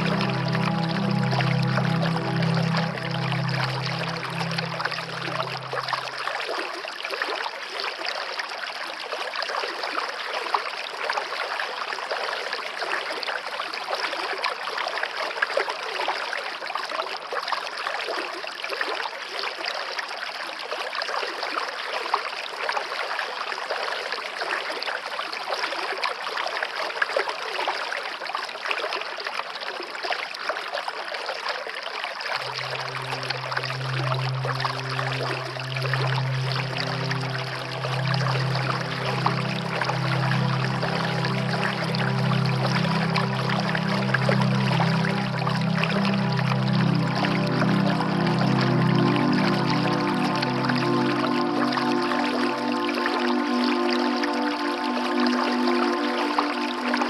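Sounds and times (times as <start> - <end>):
waterfall rushing and splashing: 0.0 - 6.2, 32.4 - 57.0.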